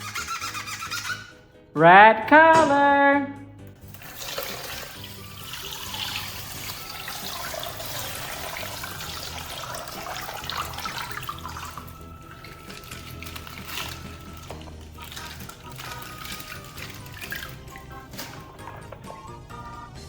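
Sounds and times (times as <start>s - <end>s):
water gushing and splashing: 3.8s - 19.6s.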